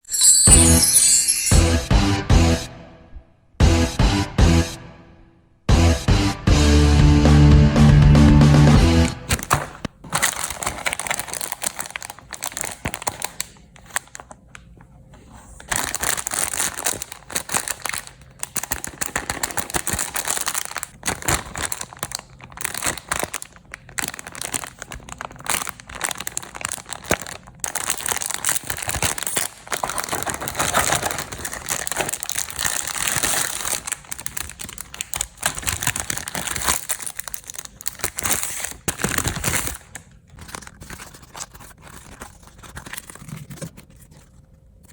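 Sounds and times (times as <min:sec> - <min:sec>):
snack packaging crinkling: 0:09.3 - 0:14.5, 0:15.6 - 0:44.9.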